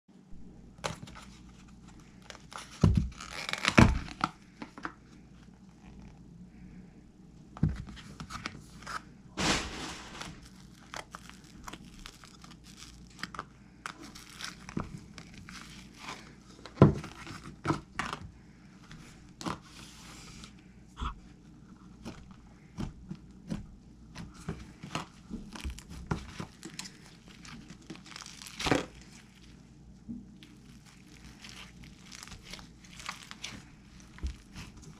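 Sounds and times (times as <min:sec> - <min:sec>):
slime tearing and crackling: 0:02.3 - 0:04.4, 0:09.4 - 0:16.4, 0:24.8 - 0:29.6, 0:30.4 - 0:34.9
slime popping: 0:30.4 - 0:34.9.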